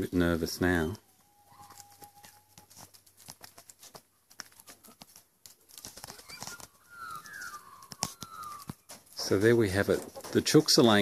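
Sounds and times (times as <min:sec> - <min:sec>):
bird chirping: 0:00.0 - 0:02.8, 0:05.8 - 0:11.0.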